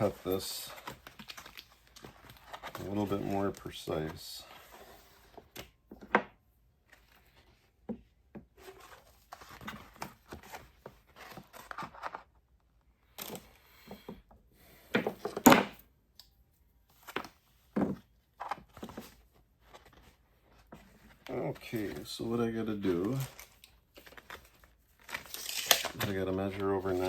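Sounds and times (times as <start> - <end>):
plastic crinkling: 21.3 - 27.0
film scraping and tearing: 25.0 - 27.0.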